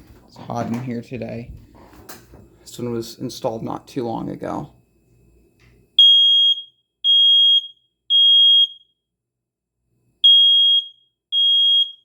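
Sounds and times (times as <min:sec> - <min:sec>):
smoke alarm beeping: 0:06.0 - 0:09.1, 0:10.2 - 0:12.0.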